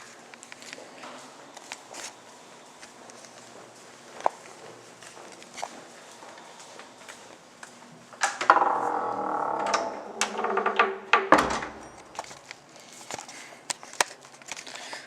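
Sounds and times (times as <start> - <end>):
door creaking: 8.2 - 12.5
door thump shut: 9.8 - 12.1.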